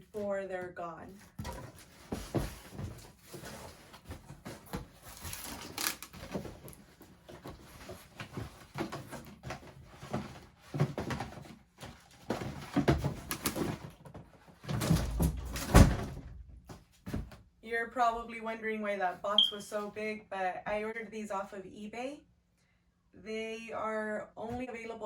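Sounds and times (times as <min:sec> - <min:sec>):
cardboard rustling and scraping: 0:01.1 - 0:16.0.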